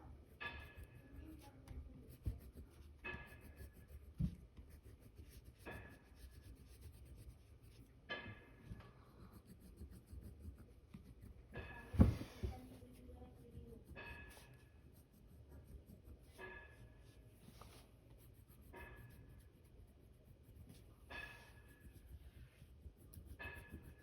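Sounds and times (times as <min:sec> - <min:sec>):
pencil scratching on paper: 0:00.0 - 0:24.0
soft knocks: 0:11.6 - 0:12.7.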